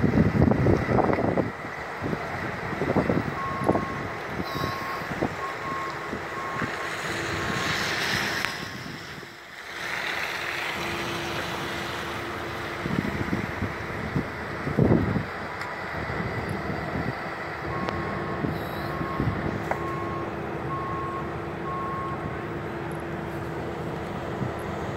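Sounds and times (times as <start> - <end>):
wind buffeting microphone: 0.0 - 9.3, 12.4 - 19.8
traffic rushing: 0.0 - 24.9
high beeps: 3.4 - 6.7.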